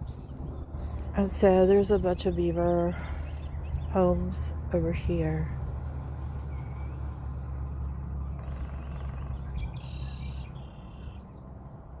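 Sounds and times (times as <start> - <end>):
steady low rumble: 0.0 - 12.0
bird calls with stacked tones: 8.3 - 11.3
bird whistle: 9.0 - 11.2.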